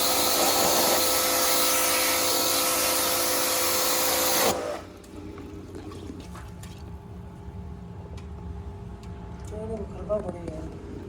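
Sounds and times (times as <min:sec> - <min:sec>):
water spray hiss: 0:00.0 - 0:04.6
pressure washer motor whine: 0:00.0 - 0:05.2.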